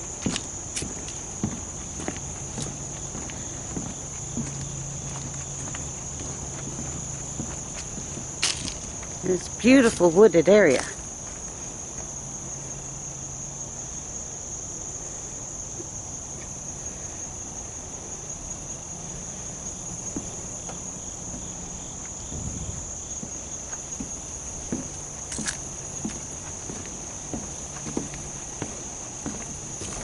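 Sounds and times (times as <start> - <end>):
insects trilling: 0.0 - 30.0.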